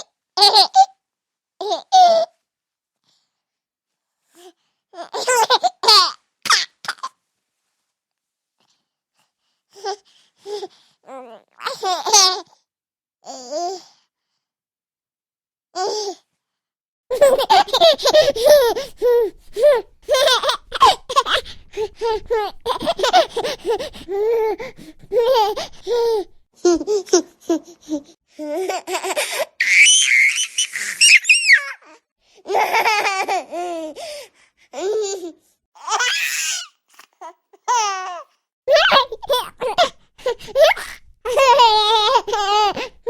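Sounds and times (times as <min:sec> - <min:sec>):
baby laughing: 0:17.1 - 0:27.3, 0:38.7 - 0:43.0.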